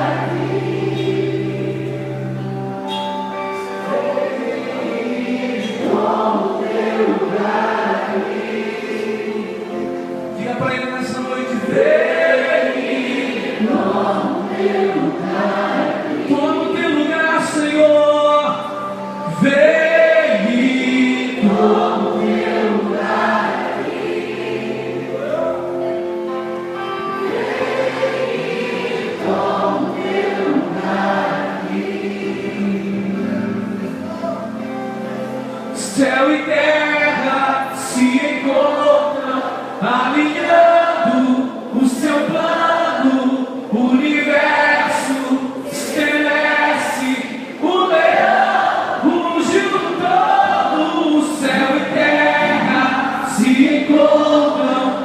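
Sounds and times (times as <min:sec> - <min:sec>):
instrumental accompaniment: 0:00.0 - 0:38.2
group of voices singing: 0:00.0 - 0:55.0.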